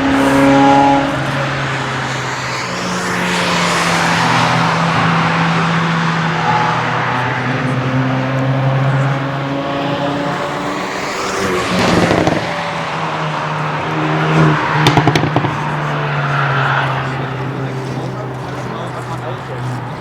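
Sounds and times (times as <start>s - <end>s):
race cars driving past: 0.0s - 20.0s
exhaust crackles and pops: 14.8s - 15.7s.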